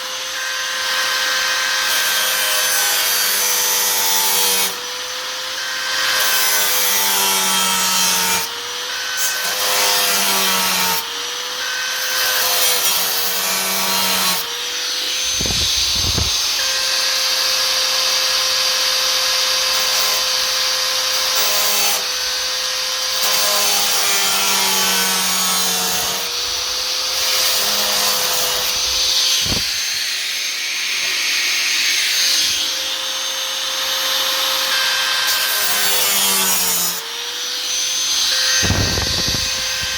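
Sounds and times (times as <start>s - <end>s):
power tool cutting sheet steel: 0.0s - 39.9s.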